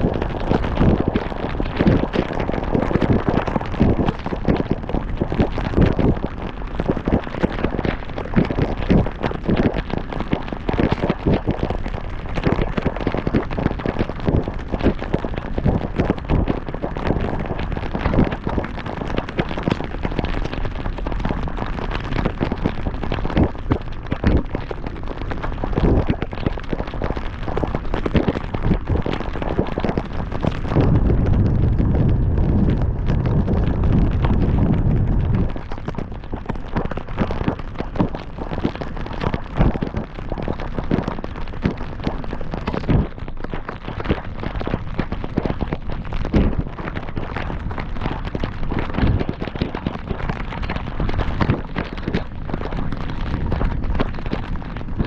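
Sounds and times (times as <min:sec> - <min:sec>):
heavy rain pelting a car: 0:09.2 - 0:55.0
road rumble: 0:30.8 - 0:35.5.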